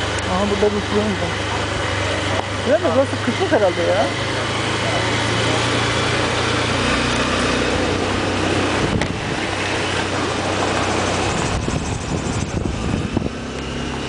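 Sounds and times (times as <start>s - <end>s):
motorcycle engine running: 0.0s - 14.0s
wind buffeting microphone: 8.3s - 14.0s.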